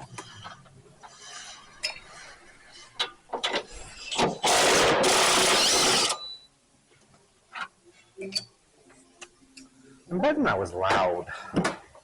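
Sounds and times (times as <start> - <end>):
air tool running: 4.4 - 6.2.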